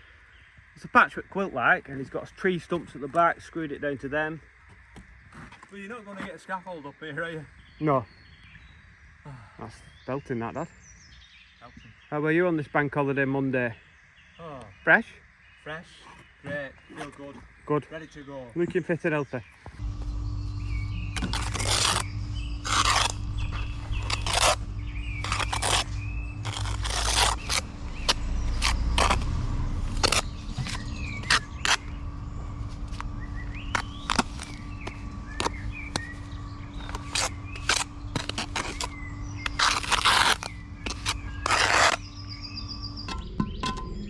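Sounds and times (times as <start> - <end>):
birds chirping: 0.0 - 44.0
trowel scraping on mortar and bricks: 20.8 - 43.6.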